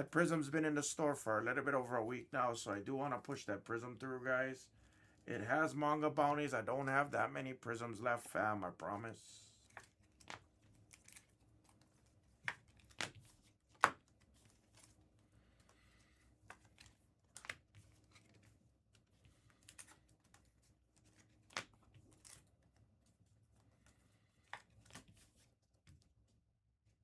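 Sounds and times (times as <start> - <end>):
foil wrappers and cards crinkling: 9.6 - 15.0, 15.6 - 22.6.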